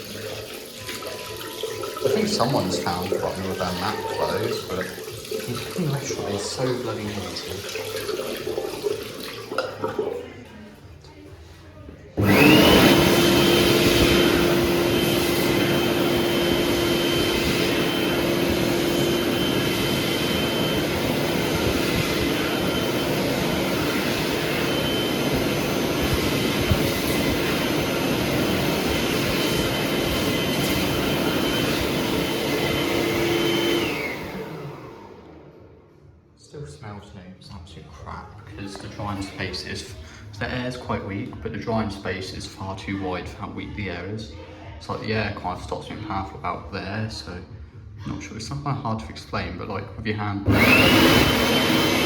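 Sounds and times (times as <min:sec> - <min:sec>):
hand dryer running: 0:00.0 - 0:10.5, 0:12.2 - 0:35.8, 0:50.4 - 0:52.0.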